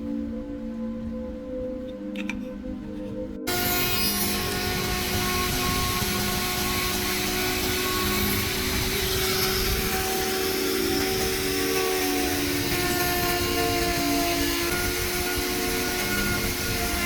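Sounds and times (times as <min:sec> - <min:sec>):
woodworking power tool running: 0:03.5 - 0:17.0.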